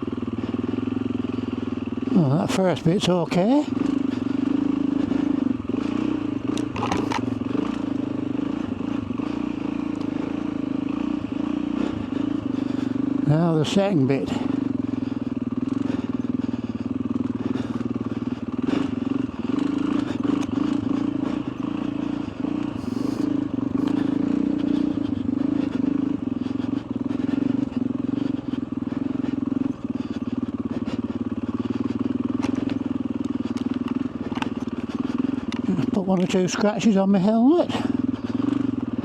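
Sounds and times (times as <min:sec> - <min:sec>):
motorcycle engine at low revs: 0:00.0 - 0:39.0.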